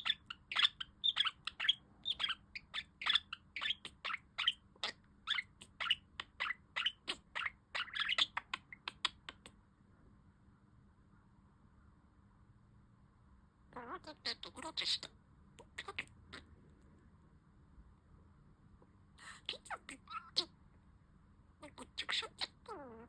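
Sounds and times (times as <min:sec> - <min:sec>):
budgerigar chirping: 0:00.0 - 0:09.5, 0:13.8 - 0:16.4, 0:19.5 - 0:20.5, 0:21.6 - 0:23.0.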